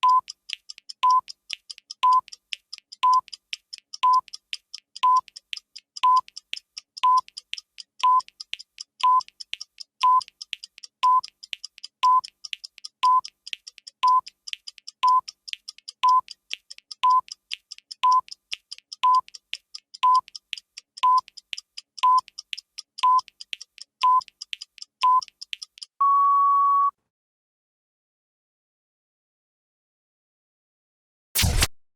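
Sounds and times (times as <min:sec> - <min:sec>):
clock ticking: 0:00.0 - 0:26.0
short electronic beeps: 0:31.4 - 0:31.7.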